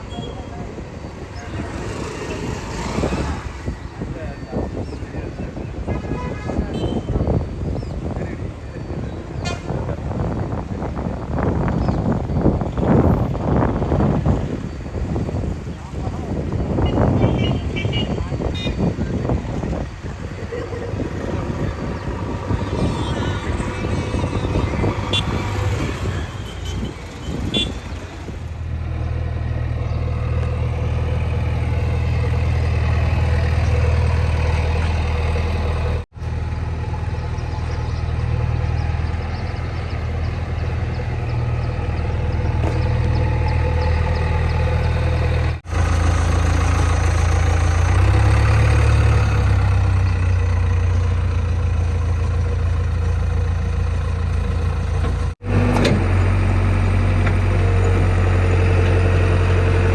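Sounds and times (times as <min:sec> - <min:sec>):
diesel engine droning: 0:18.0 - 0:59.9.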